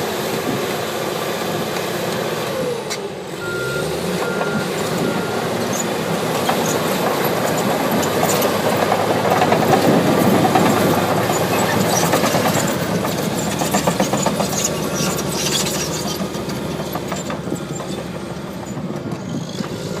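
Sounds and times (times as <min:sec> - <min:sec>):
diesel engine under load: 0:00.0 - 0:20.0
steel tracks clattering: 0:05.9 - 0:19.8.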